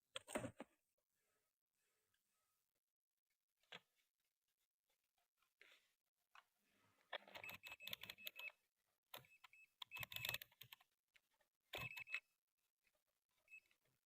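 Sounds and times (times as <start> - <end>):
small parts and tools clicking: 9.1 - 10.9.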